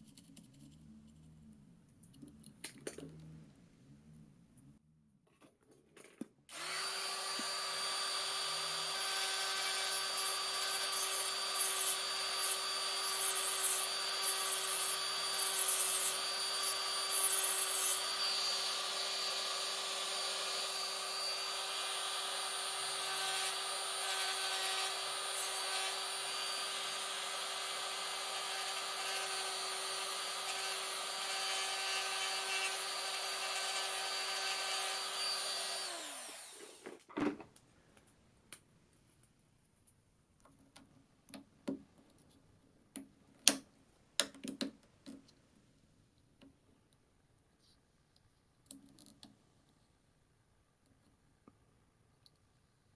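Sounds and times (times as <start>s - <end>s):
rotary power tool running: 6.5s - 36.8s.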